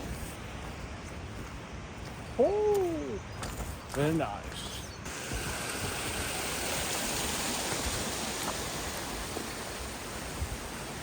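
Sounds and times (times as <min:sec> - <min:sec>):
fast-flowing water rushing: 0:05.0 - 0:11.0.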